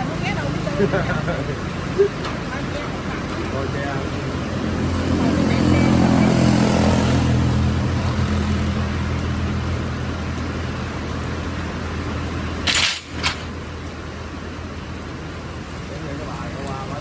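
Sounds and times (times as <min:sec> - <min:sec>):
motor engine droning: 0:00.0 - 0:17.0.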